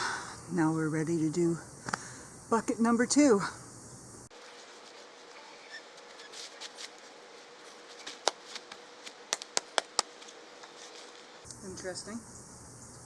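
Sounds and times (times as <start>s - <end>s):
faint rustling: 4.3s - 11.5s
sharp clicks and taps: 8.1s - 10.3s.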